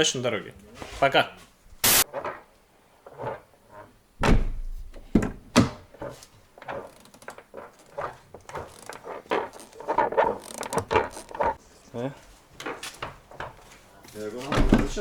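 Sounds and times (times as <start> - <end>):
car door shutting: 4.2 - 5.8.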